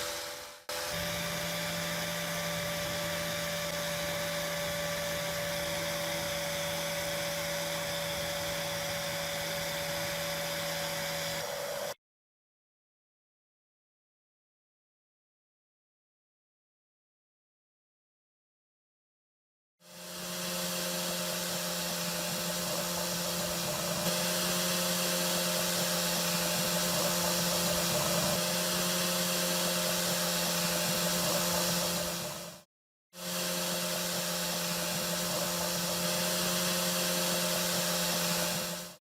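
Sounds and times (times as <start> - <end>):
power tool motor running: 0.0 - 12.0, 19.8 - 39.0.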